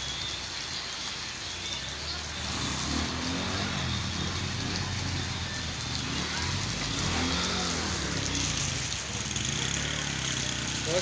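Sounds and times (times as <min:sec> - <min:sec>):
rain on wet road: 0:00.0 - 0:11.0
vehicle engine running: 0:02.4 - 0:11.0.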